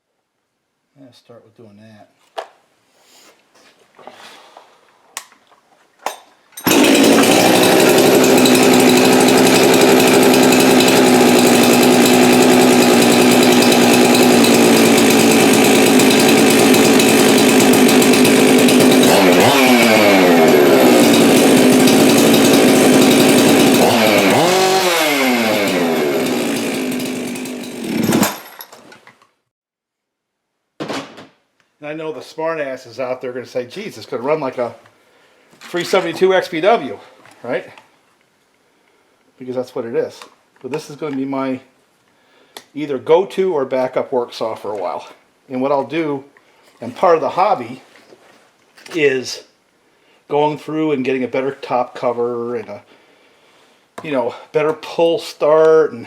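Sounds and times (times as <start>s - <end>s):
chainsaw running at high revs: 6.6s - 28.5s.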